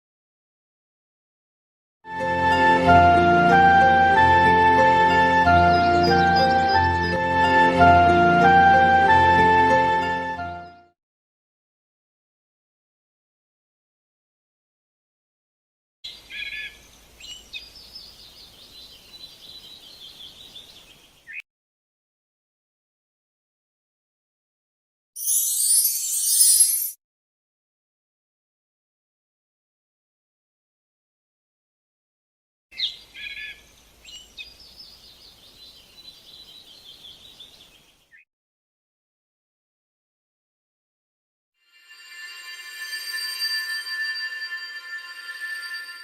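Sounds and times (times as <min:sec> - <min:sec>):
birds calling and chirping: 0:05.6 - 0:07.2
insect chirring trill: 0:41.7 - 0:46.0
bird chirps: 0:41.8 - 0:46.0.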